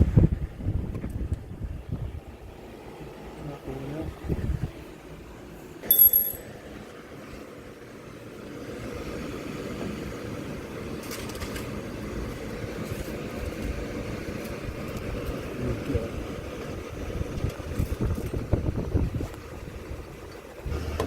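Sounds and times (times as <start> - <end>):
steady background noise: 1.4 - 21.0
metallic lock clink: 5.8 - 6.4.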